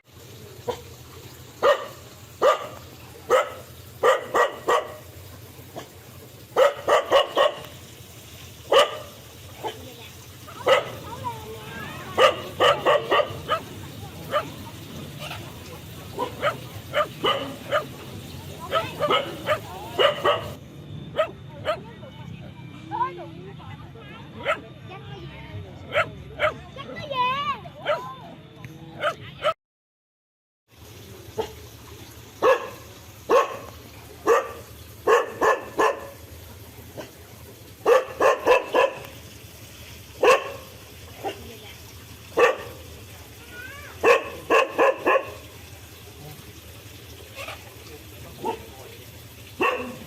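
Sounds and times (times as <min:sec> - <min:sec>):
dog barking: 0:01.6 - 0:05.1, 0:06.6 - 0:07.7, 0:08.7 - 0:09.8, 0:10.5 - 0:11.1, 0:12.1 - 0:14.6, 0:15.2 - 0:18.0, 0:18.6 - 0:20.6, 0:21.2 - 0:21.8, 0:24.4 - 0:24.6, 0:25.9 - 0:26.6, 0:27.8 - 0:28.1, 0:29.0 - 0:29.6, 0:31.4 - 0:31.6, 0:32.4 - 0:36.2, 0:37.8 - 0:39.1, 0:40.2 - 0:41.4, 0:42.4 - 0:42.8, 0:44.0 - 0:45.4, 0:48.4 - 0:48.7, 0:49.6 - 0:50.0.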